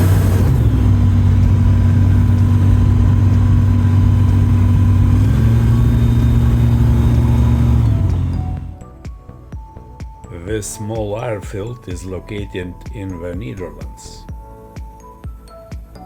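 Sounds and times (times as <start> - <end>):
light aircraft engine running: 0.0 - 8.8.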